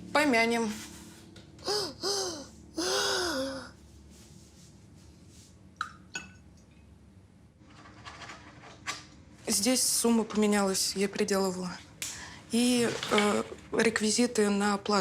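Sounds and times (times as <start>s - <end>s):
person sighing and sobbing: 1.6s - 3.8s.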